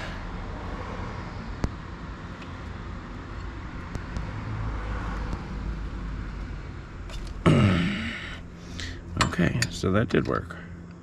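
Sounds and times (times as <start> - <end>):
steady low rumble: 0.0 - 11.0.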